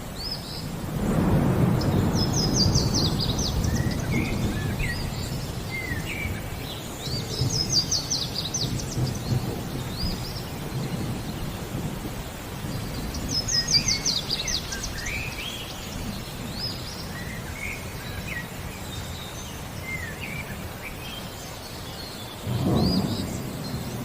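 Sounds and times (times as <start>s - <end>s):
rain: 0.0s - 24.0s
songbirds chirping: 0.0s - 24.0s
thunder rumbling: 0.8s - 17.6s, 22.4s - 24.0s.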